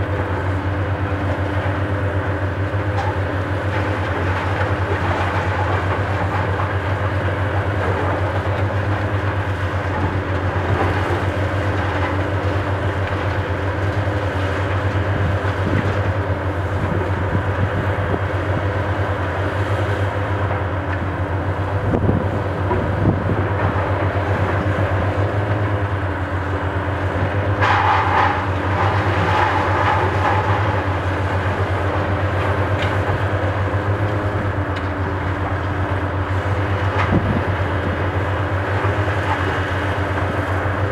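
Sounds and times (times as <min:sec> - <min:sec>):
excavator diesel engine drone: 0:00.0 - 0:40.9.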